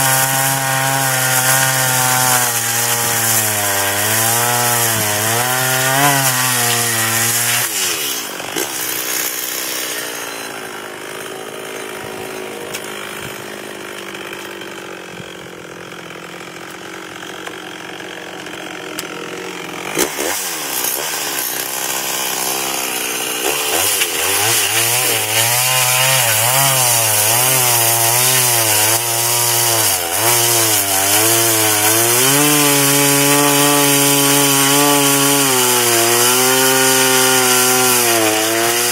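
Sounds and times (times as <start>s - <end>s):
chainsaw cutting tree trunk: 0.0s - 38.9s.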